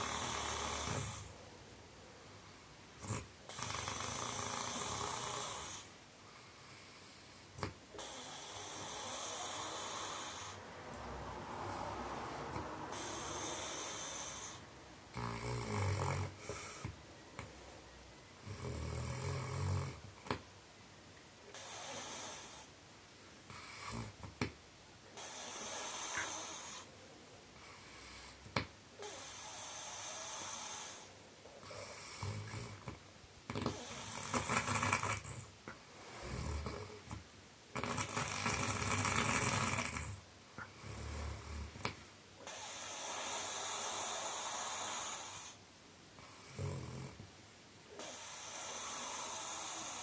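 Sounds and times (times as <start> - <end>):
man snoring: 0.0 - 1.3, 3.0 - 5.9, 7.6 - 16.9, 18.4 - 20.1, 21.5 - 22.7, 23.6 - 24.2, 25.2 - 26.9, 29.0 - 40.2, 40.8 - 45.6, 46.4 - 47.2, 48.0 - 50.0
breathy hissing breaths: 0.0 - 1.4, 2.4 - 17.0, 21.5 - 22.8, 25.1 - 32.8, 37.8 - 47.2, 47.9 - 50.0.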